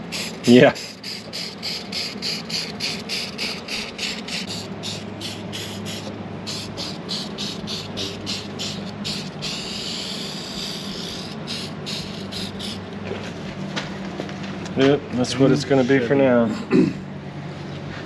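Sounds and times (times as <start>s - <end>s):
aerosol spray hissing: 0.0s - 12.9s.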